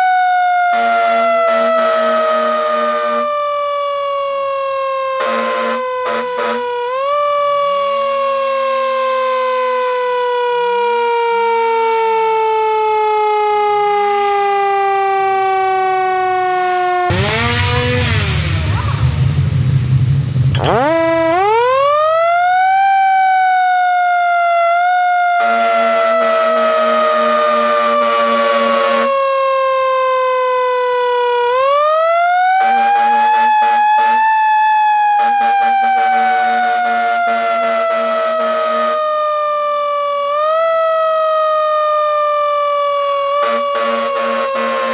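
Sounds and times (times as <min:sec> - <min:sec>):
wailing siren: 0:00.0 - 0:44.9
air horn blowing: 0:00.7 - 0:03.4, 0:05.2 - 0:06.9, 0:17.1 - 0:19.4, 0:20.5 - 0:22.2, 0:25.3 - 0:29.1, 0:35.1 - 0:39.1, 0:43.4 - 0:44.9
loud rushing noise: 0:17.1 - 0:21.8.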